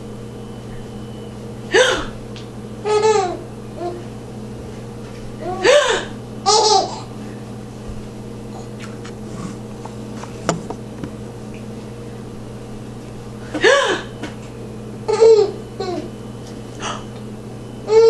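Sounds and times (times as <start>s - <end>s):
baby giggling: 2.8s - 4.0s, 5.4s - 7.1s, 15.1s - 16.1s.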